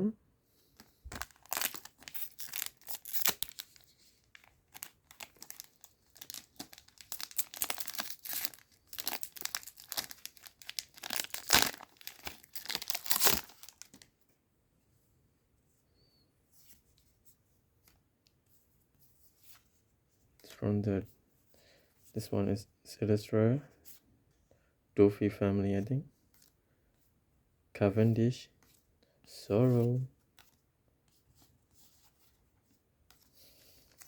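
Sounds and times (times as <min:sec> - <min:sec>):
wrapper crinkling and tearing: 0:00.8 - 0:14.1.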